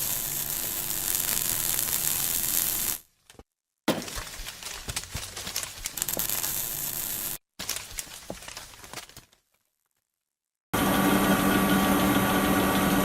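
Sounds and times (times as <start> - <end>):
band saw running: 10.8 - 13.0.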